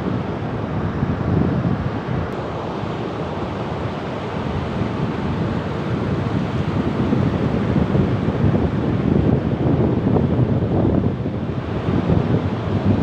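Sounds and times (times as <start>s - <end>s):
ocean waves surf: 2.5s - 7.8s.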